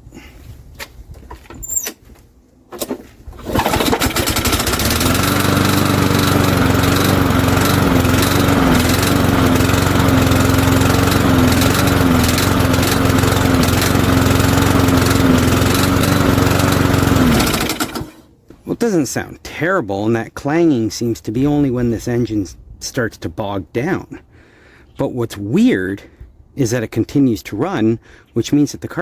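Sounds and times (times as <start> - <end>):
lawn mower engine starting and running: 1.4 - 18.4.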